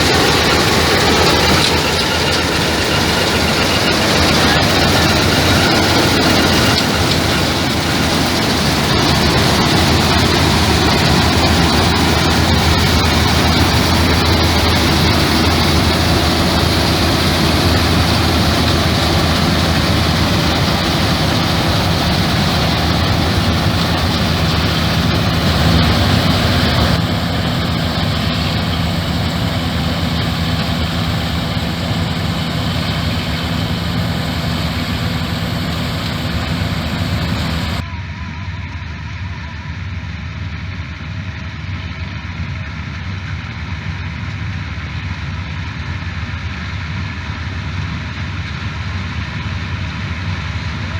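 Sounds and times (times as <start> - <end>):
diesel engine droning: 0.0 - 37.8
machine hissing: 0.0 - 37.8.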